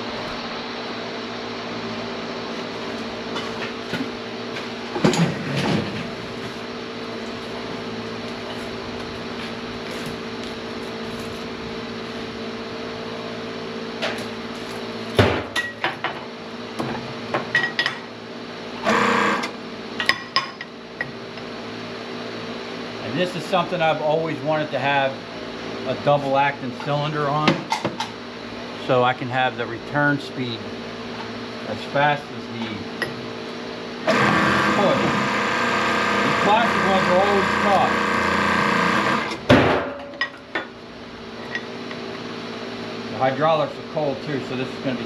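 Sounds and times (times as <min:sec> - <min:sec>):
machine hum: 0:00.0 - 0:15.2, 0:18.7 - 0:19.8, 0:30.6 - 0:39.5.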